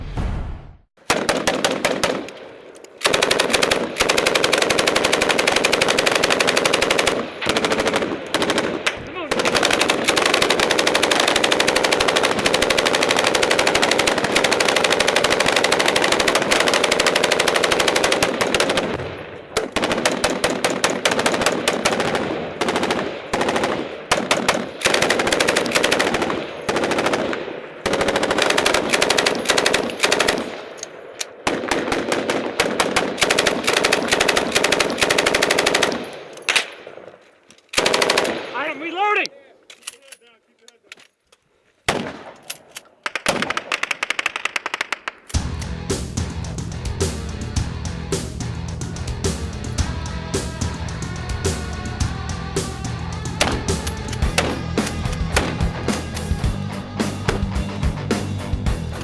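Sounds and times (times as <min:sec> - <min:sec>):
automatic gunfire: 0:01.0 - 0:30.8, 0:31.4 - 0:37.0, 0:37.7 - 0:39.1, 0:43.0 - 0:45.6, 0:53.2 - 0:56.5.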